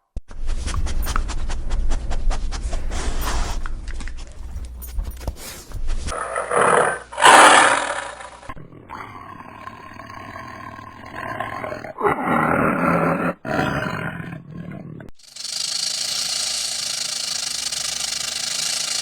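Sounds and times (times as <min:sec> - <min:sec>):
wild animal roars and calls: 0:06.1 - 0:15.1.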